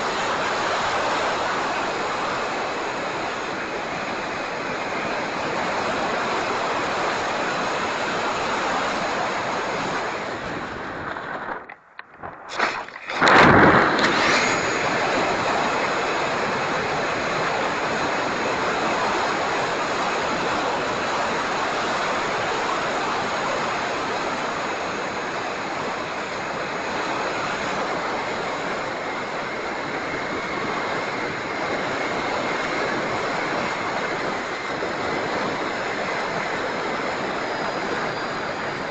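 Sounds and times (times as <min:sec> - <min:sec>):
high whine of rc jet: 0:00.0 - 0:38.9
wind rushing over microphone: 0:00.0 - 0:38.9
loud rush of air: 0:08.6 - 0:19.6.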